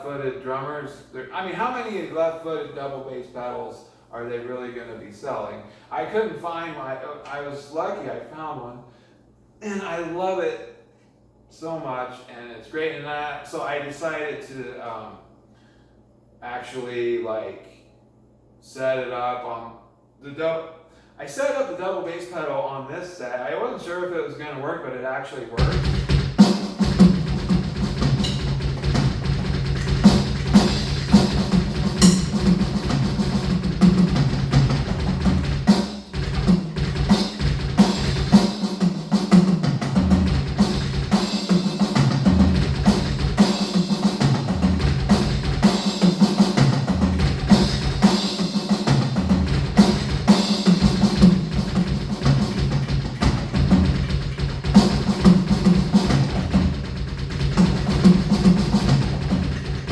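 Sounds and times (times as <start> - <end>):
bass drum strokes: 25.6 - 48.3, 48.9 - 59.9
snare drum hits: 25.6 - 59.9
cymbal hits: 27.7 - 33.4.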